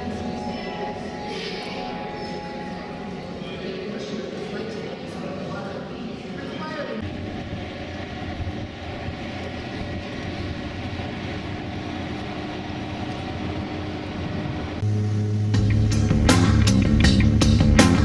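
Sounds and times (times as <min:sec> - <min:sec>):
music: 0:00.0 - 0:03.9, 0:14.8 - 0:18.0
aircraft engine drone: 0:00.0 - 0:05.0, 0:07.0 - 0:17.4.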